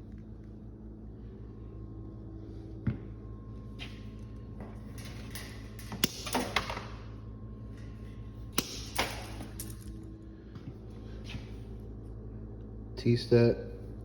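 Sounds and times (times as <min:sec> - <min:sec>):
low electrical hum: 0:00.0 - 0:14.0
hand tools clicking and snapping: 0:05.0 - 0:06.6.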